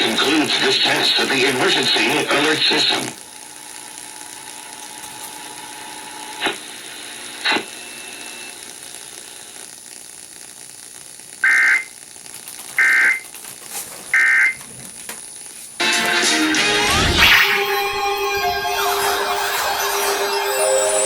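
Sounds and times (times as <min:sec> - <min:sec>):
screechy digital data tones: 0:16.6 - 0:21.0.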